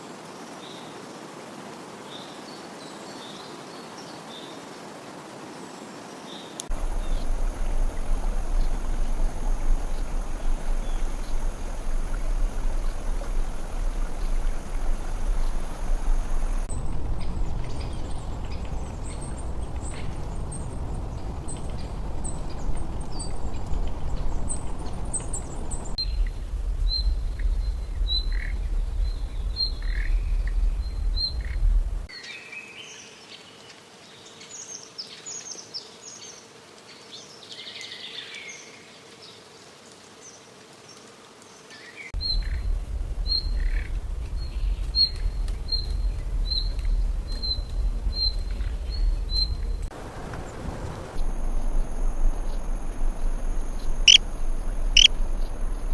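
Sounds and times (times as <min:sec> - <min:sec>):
loud low rumbling noise: 0:06.7 - 0:32.1, 0:42.2 - 0:55.9
birds chirping and calling: 0:53.8 - 0:54.2.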